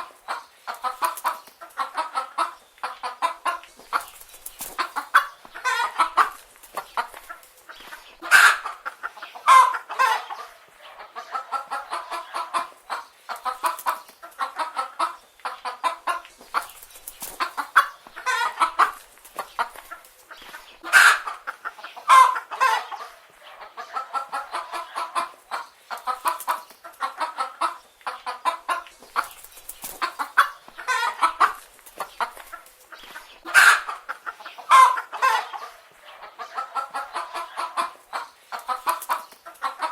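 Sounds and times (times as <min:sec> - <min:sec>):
hens clucking: 0:00.0 - 0:39.9
loud chicken call: 0:08.2 - 0:08.8, 0:09.4 - 0:10.5, 0:17.7 - 0:19.0, 0:20.8 - 0:21.4, 0:22.1 - 0:23.1, 0:33.4 - 0:34.0, 0:34.7 - 0:35.8.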